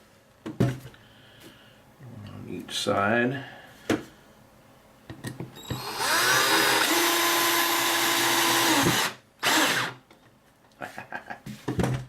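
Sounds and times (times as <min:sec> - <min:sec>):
power drill driving a screw: 0:05.6 - 0:10.0.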